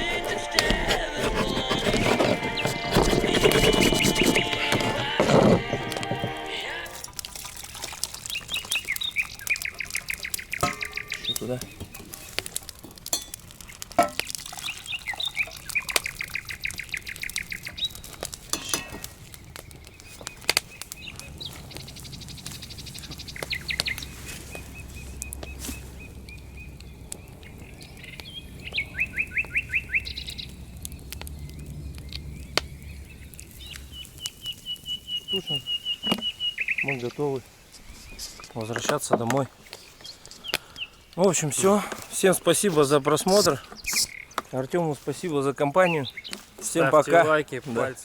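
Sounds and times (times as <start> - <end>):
songbirds singing trills: 0.0 - 6.2, 6.9 - 48.0
sharp clicks and snaps: 8.1 - 14.4, 15.0 - 25.6, 26.3 - 34.4.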